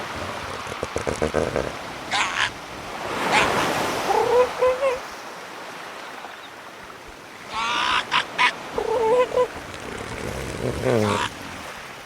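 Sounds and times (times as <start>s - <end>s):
surf splashing: 0.0s - 12.0s
wavering animal calls: 2.1s - 2.6s, 3.2s - 5.0s, 7.5s - 9.7s, 10.3s - 11.4s.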